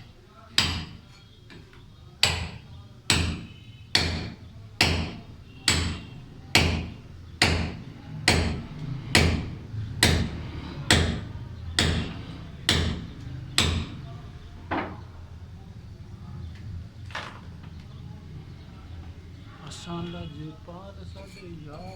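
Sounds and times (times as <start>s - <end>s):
hammer striking steel chisel: 0.6s - 1.6s, 2.2s - 14.0s.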